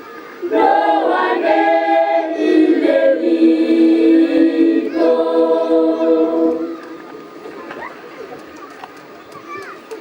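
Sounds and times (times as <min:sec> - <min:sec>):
choir singing held chords: 0:00.4 - 0:07.4.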